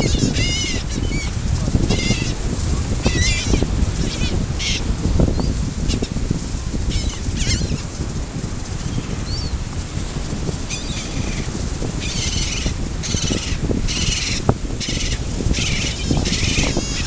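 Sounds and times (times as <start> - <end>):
steady low rumble: 0.0 - 17.0
small birds chirping: 10.7 - 17.0.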